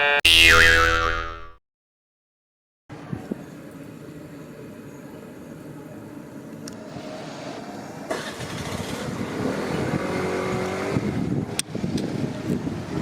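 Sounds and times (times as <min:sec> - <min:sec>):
vehicle approaching: 0:06.6 - 0:13.0.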